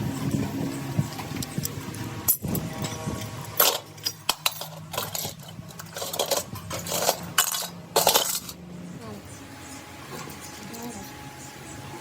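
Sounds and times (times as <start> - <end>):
steady low hum: 0.0 - 12.0
metal parts clinking and scraping: 1.1 - 8.6.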